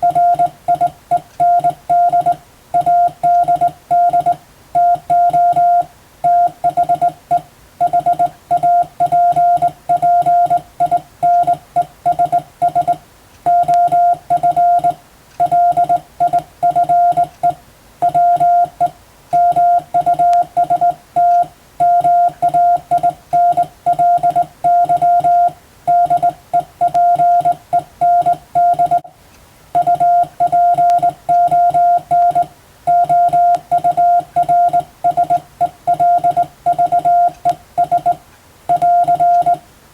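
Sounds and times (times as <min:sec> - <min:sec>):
morse code beeps: 0:00.0 - 0:29.1, 0:29.8 - 0:39.6.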